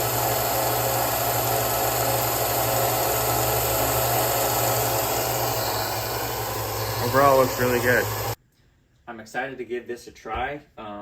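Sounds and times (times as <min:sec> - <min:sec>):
sander motor hum: 0:00.0 - 0:08.4
sanding belt whirring: 0:00.0 - 0:08.4.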